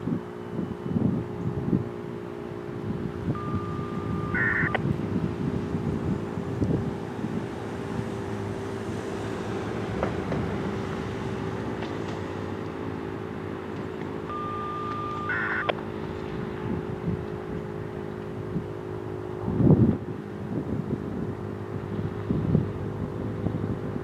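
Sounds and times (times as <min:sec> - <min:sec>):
warning siren steady tone: 0:00.0 - 0:06.7, 0:14.1 - 0:19.6.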